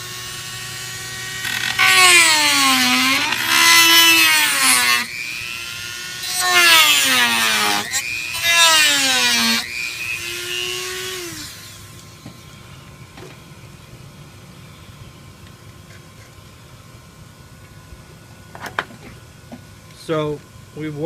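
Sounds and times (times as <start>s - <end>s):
rotary tool whining: 0.0s - 13.4s.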